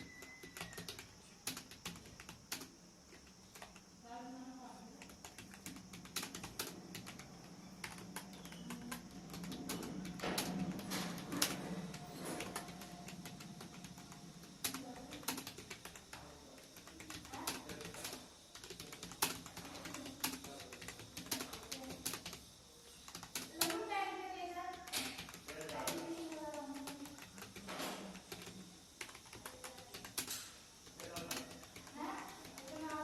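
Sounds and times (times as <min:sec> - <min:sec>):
computer keyboard typing: 0:00.0 - 0:04.0, 0:04.9 - 0:24.0, 0:24.6 - 0:33.0.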